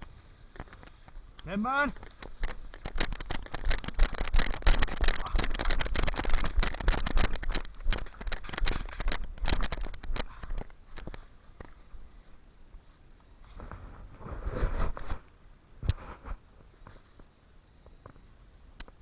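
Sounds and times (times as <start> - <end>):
gear rattling and rustling: 0.0 - 12.3
footsteps on rough ground: 0.0 - 15.2
wind rumble on microphone: 2.2 - 10.8.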